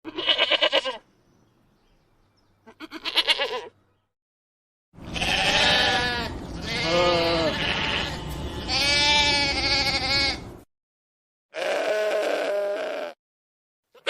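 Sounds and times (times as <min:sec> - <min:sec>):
animal bleating: 0:00.1 - 0:01.0, 0:02.6 - 0:03.8, 0:05.0 - 0:10.5, 0:11.5 - 0:13.2.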